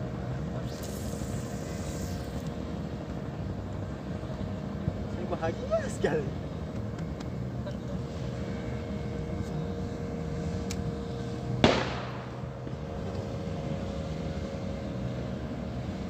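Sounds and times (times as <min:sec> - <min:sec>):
sharp bang: 0:11.6 - 0:12.9.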